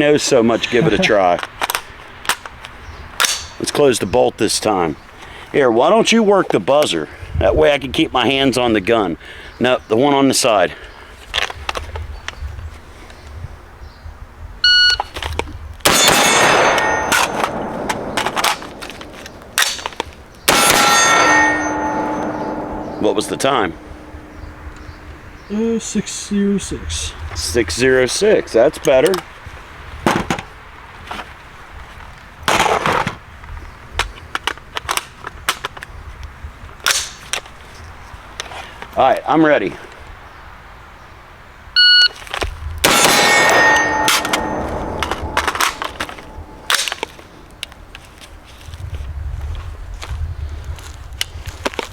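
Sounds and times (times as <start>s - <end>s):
steel targets ringing: 3.2s - 3.6s, 15.9s - 25.4s, 42.9s - 47.5s
rifle shots: 15.8s - 24.6s, 42.8s - 47.2s
sharp metallic clicks: 15.9s - 25.2s, 42.9s - 47.7s.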